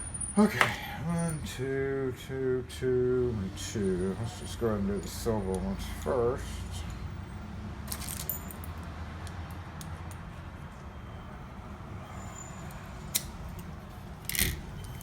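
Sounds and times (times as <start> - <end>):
steady low hum: 0.0 - 7.3
metallic clicks of lock and keys: 13.1 - 15.0.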